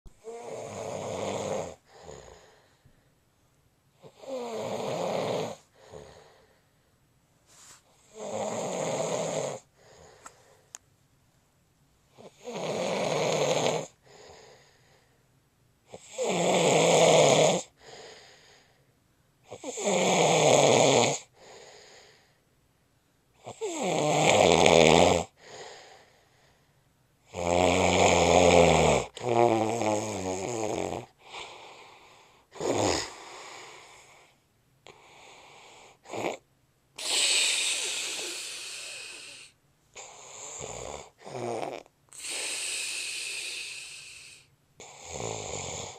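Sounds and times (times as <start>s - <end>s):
man snoring loudly: 0.2s - 2.5s, 4.0s - 6.2s, 8.1s - 9.7s, 12.2s - 14.0s, 15.9s - 17.7s, 19.5s - 21.3s, 23.4s - 25.3s, 27.3s - 31.1s, 32.6s - 33.5s, 37.0s - 45.9s
short breath: 9.7s - 10.8s, 17.8s - 18.9s, 37.0s - 40.6s, 42.1s - 45.0s.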